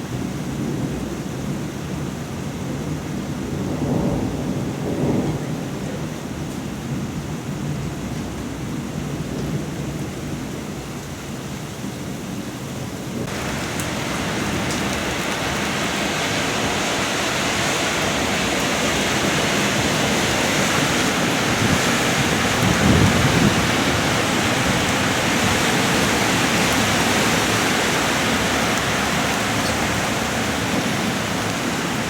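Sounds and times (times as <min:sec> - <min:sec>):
low thunder rumble: 0:00.0 - 0:10.8, 0:13.1 - 0:32.0
heavy rain hissing: 0:09.0 - 0:32.0.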